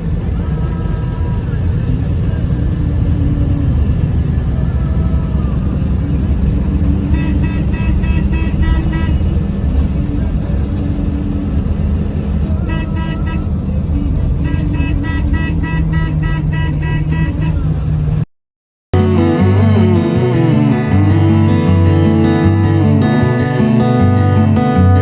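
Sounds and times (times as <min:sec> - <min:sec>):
bus engine rumble: 0:00.0 - 0:18.3, 0:19.0 - 0:25.0
road noise: 0:00.0 - 0:18.3, 0:19.0 - 0:25.0
vehicle horns honking: 0:04.2 - 0:18.2.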